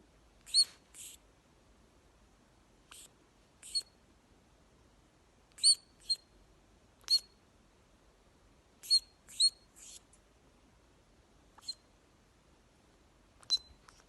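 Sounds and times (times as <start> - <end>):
small pet squeaking: 0.4 - 1.2, 2.9 - 4.0, 5.5 - 6.3, 7.0 - 7.4, 8.8 - 10.1, 11.6 - 11.9, 13.4 - 14.0.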